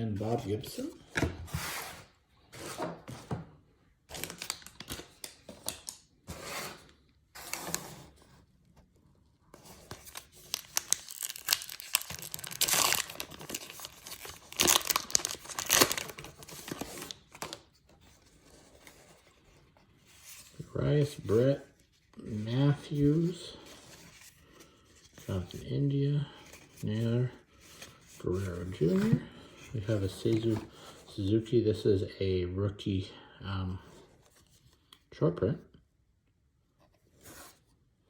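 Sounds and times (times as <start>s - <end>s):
wrapper tearing and crinkling: 10.0s - 17.3s.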